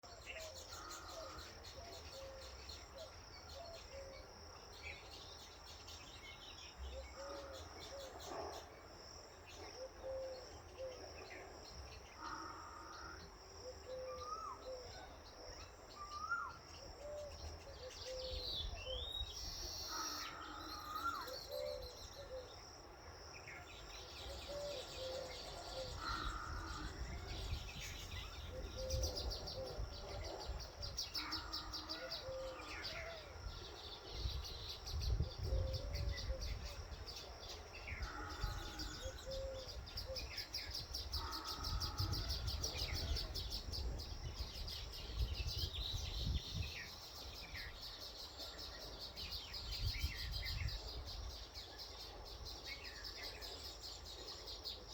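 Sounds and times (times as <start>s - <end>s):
bird low call: 16.0s - 22.6s, 23.6s - 36.8s, 37.8s - 47.0s.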